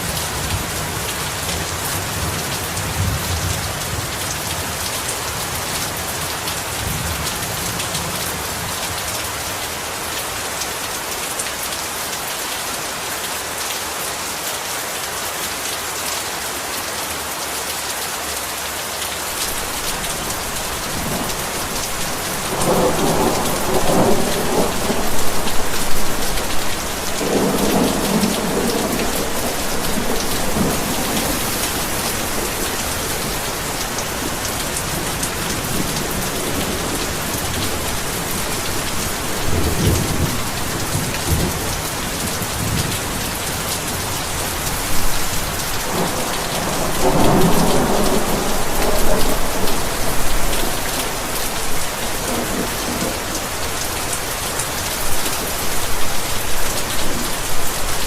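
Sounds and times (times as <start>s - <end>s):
heavy rain falling: 0.0s - 58.0s
thunder rumbling: 19.6s - 43.1s, 44.9s - 53.8s.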